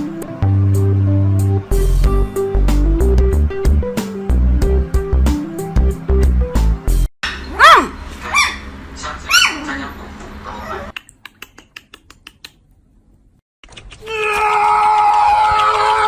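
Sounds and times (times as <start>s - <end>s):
animal high calls: 7.5s - 8.7s, 9.3s - 9.7s.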